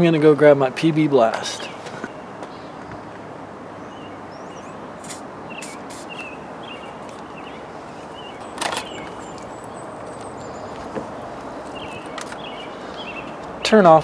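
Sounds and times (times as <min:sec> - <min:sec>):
small birds chirping: 0:03.8 - 0:14.0.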